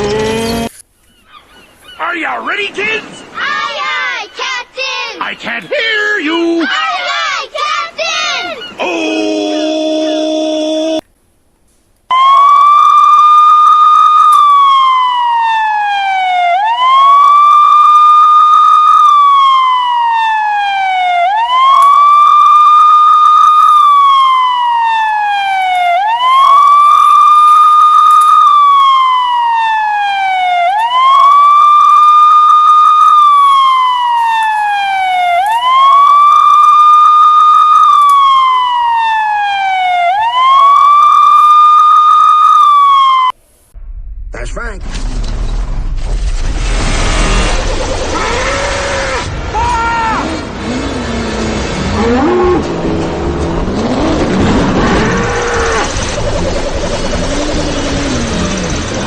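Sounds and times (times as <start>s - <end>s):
police wail siren: 12.1s - 43.4s, 48.1s - 59.0s.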